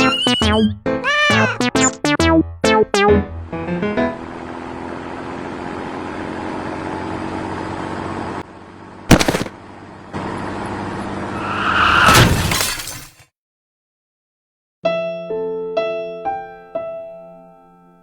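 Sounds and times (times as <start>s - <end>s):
engine-like drone: 3.4s - 12.2s
sharp bang: 9.1s - 9.5s, 11.4s - 12.8s.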